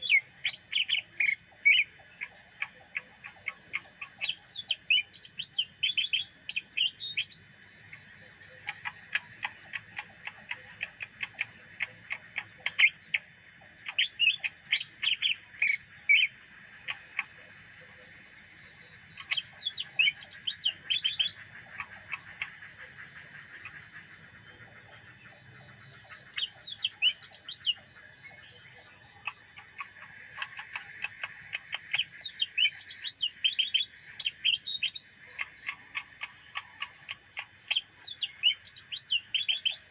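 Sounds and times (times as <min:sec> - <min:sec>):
bird singing chirps and trills: 0:00.0 - 0:39.9.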